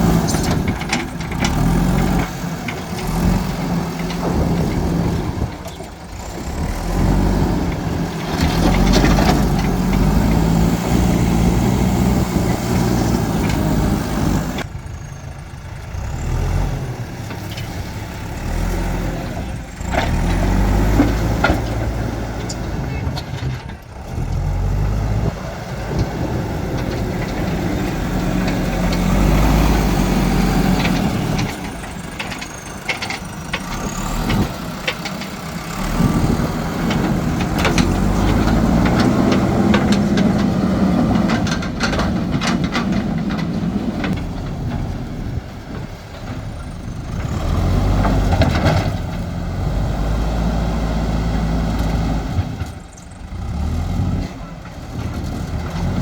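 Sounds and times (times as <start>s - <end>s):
knocks and rattles: 0.0s - 14.7s, 17.2s - 25.0s, 25.8s - 50.1s
diesel engine working under load: 0.0s - 56.0s.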